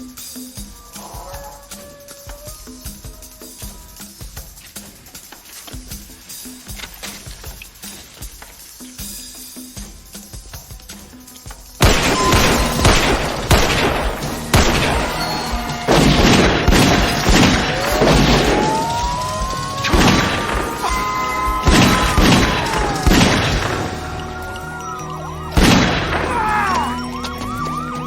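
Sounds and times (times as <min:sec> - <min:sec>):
heavy booms and smashing impacts: 0:11.8 - 0:24.4, 0:25.6 - 0:26.8
loud crash: 0:11.8 - 0:24.6, 0:25.5 - 0:27.4
gliding whine: 0:12.1 - 0:28.0.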